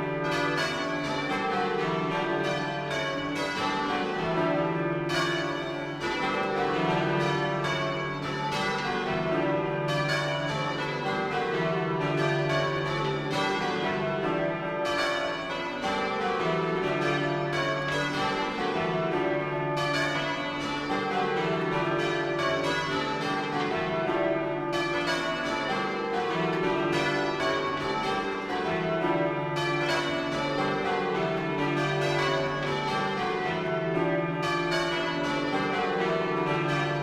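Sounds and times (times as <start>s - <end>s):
church bells ringing: 0.0s - 37.0s.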